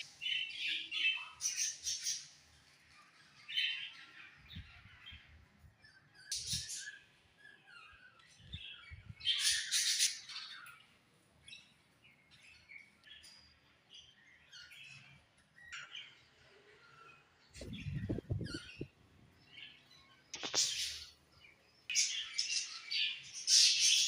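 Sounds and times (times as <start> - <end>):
budgerigars chirping: 9.3 - 10.7.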